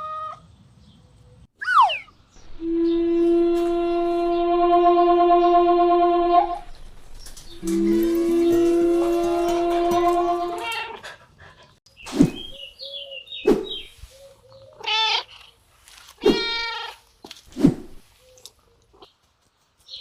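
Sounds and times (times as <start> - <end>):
held musical tone: 2.4 - 10.7
sharp thuds: 12.0 - 12.7
cat meowing: 14.8 - 15.3, 16.2 - 17.0.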